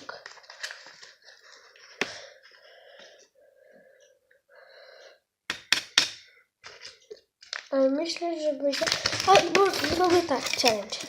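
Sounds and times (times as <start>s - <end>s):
handling noise: 8.8s - 11.0s.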